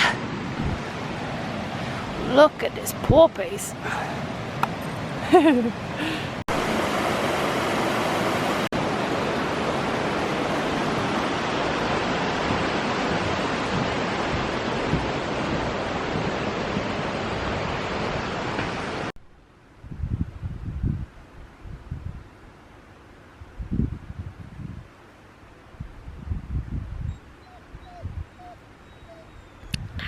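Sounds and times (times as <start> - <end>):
fast-flowing water rushing: 3.7 - 19.1.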